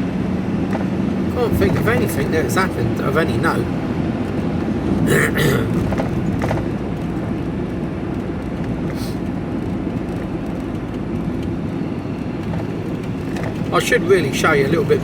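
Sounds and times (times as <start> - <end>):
van engine and road rumble: 0.0 - 15.0.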